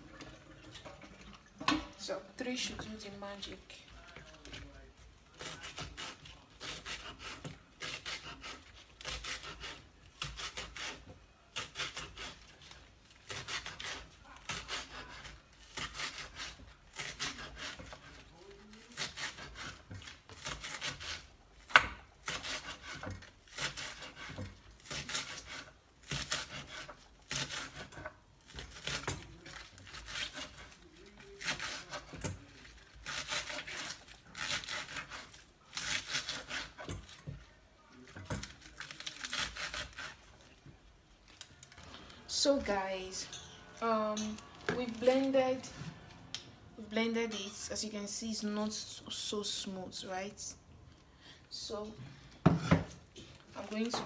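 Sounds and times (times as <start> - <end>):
knife slicing onions on board: 5.4 - 37.4, 38.1 - 40.3.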